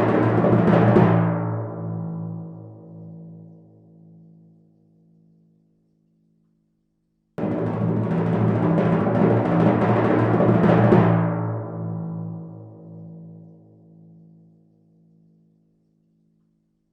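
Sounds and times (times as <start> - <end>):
timpani roll: 0.0 - 2.6, 7.4 - 13.0.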